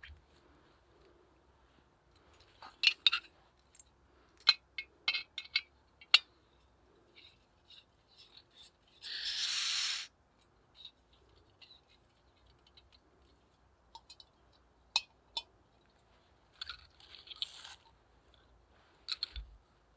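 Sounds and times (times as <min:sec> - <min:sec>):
knife scraping fire steel: 0:09.0 - 0:10.1.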